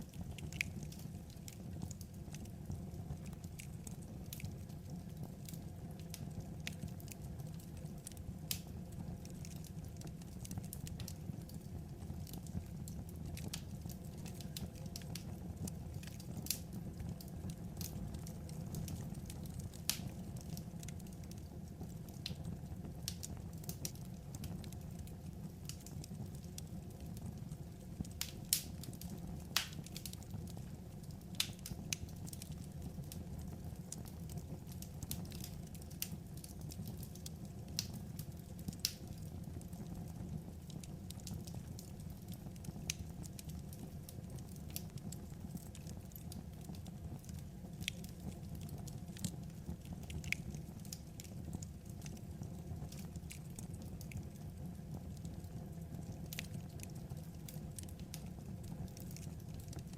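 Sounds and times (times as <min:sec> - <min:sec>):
crackling wood fire: 0:00.0 - 0:59.9.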